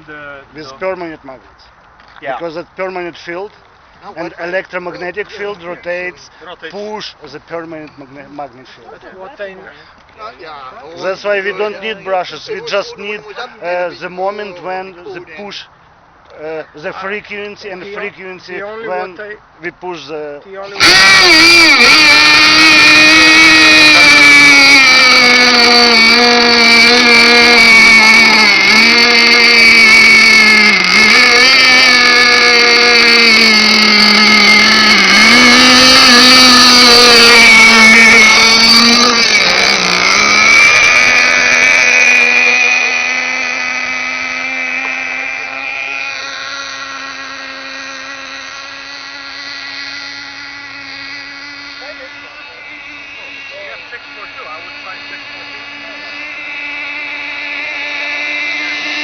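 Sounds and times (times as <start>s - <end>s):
model boat engine revving: 10.9s - 15.6s, 19.9s - 59.0s.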